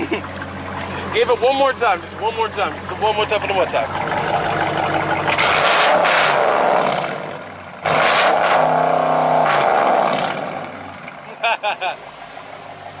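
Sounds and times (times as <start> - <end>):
car engine revving: 0.0 - 13.0.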